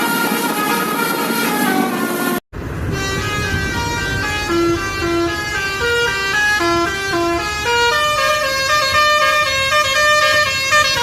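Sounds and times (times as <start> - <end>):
multi-tone musical bus horn: 0.0 - 11.0
low rumble: 2.6 - 10.2.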